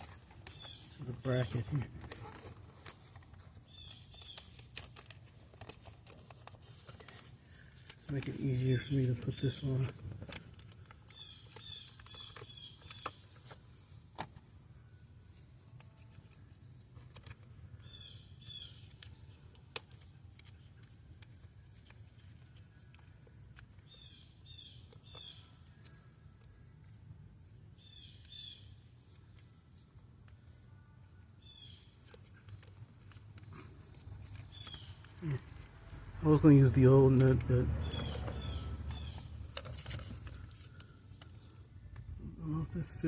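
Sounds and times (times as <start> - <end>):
bird chirping: 0.4 - 1.8, 3.6 - 4.7, 11.0 - 13.4, 17.8 - 19.3, 23.8 - 26.1, 27.8 - 29.2, 31.4 - 32.6, 33.6 - 35.4, 36.2 - 42.9.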